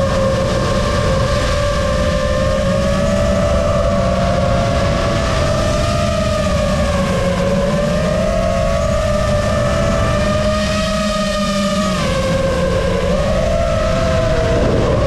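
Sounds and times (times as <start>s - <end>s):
quadcopter propellers whining: 0.0s - 15.0s.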